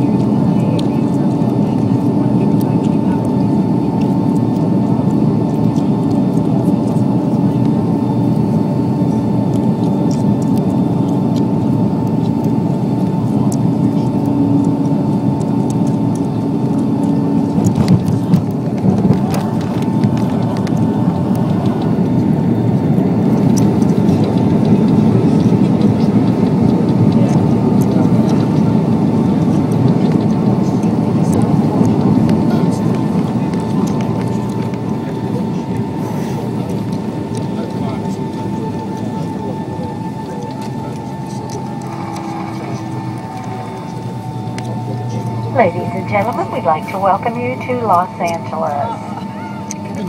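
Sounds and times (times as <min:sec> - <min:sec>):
airplane engine and airflow noise: 0:00.0 - 0:50.0
steady whine: 0:00.0 - 0:50.0.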